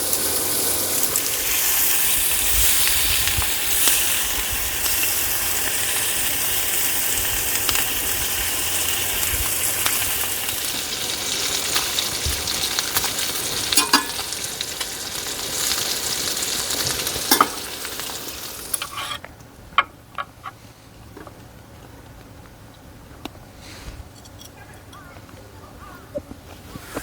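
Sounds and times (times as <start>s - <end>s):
food sizzling in a pan: 0.0s - 19.2s.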